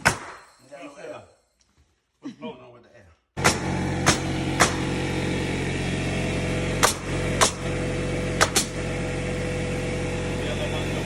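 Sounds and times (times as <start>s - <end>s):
pneumatic nail gun shots: 0.0s - 0.4s, 3.4s - 5.1s, 6.6s - 9.1s
air compressor droning hum: 3.4s - 11.0s.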